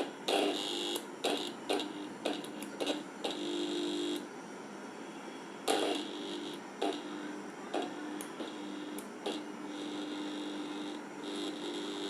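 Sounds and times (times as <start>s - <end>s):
electric motor humming with whine: 5.7s - 12.0s.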